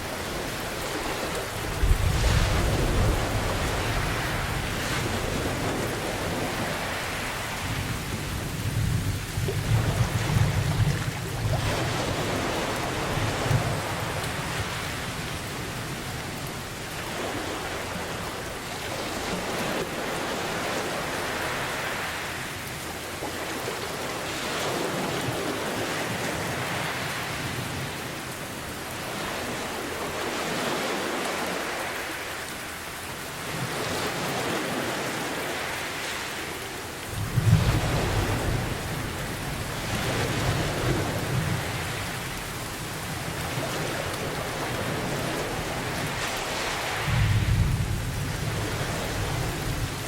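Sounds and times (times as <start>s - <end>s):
heavy rain hissing: 34.4s - 50.0s
low thunder rumble: 47.1s - 50.0s.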